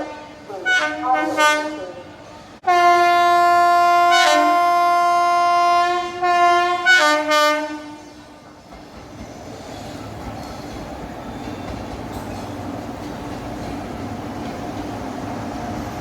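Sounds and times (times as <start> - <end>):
train rumbling on rails: 0.0 - 16.0
locomotive horn blast: 2.6 - 8.4.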